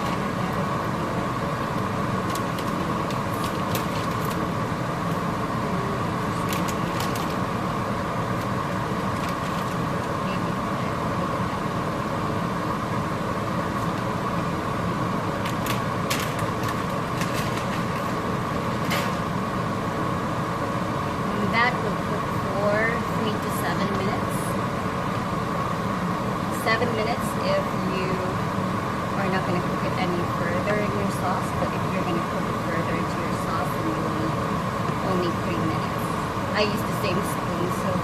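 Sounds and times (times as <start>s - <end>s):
whirring hum: 0.0s - 38.0s.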